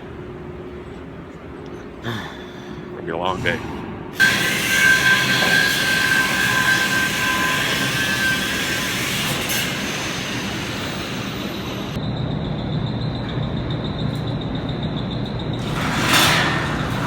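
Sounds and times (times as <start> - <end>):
industrial rushing hiss: 3.2 - 12.0.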